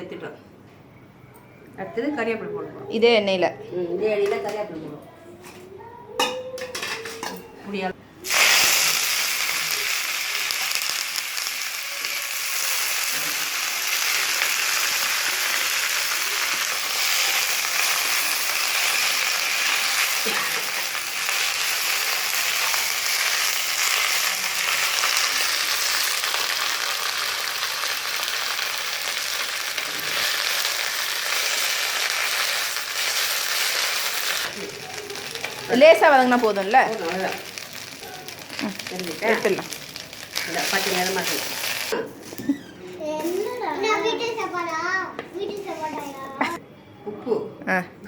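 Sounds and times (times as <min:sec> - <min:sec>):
leaves sizzling in hot oil: 0:08.2 - 0:42.0.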